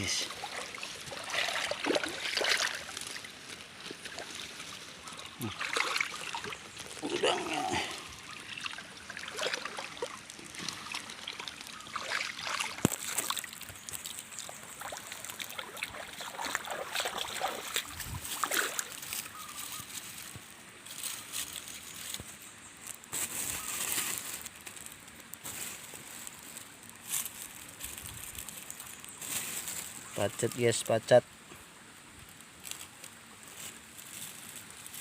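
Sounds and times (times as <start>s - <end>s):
water sloshing and splashing: 0.2s - 19.7s.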